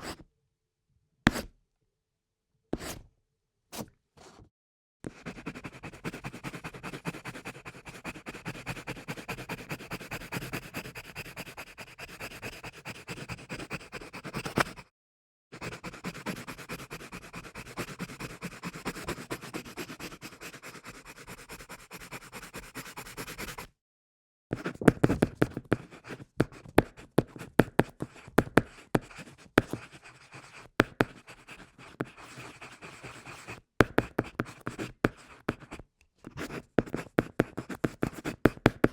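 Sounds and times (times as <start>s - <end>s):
pencil taps on paper: 1.3s - 1.5s, 2.8s - 3.0s, 24.6s - 29.9s, 33.8s - 34.9s, 36.4s - 38.9s
pencil scribbling on paper: 5.1s - 14.8s, 15.6s - 23.7s, 24.6s - 38.9s.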